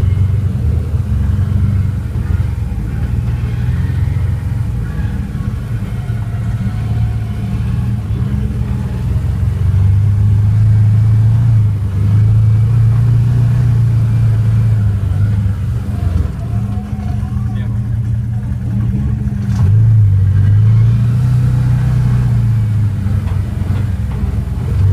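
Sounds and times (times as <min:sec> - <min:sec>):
car engine driving: 0:00.0 - 0:24.9.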